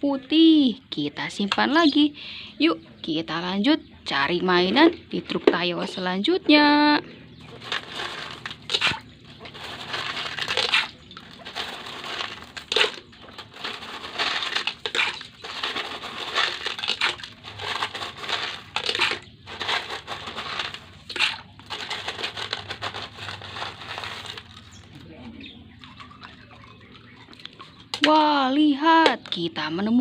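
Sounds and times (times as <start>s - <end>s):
gravel crunching by hand: 7.4s - 26.8s.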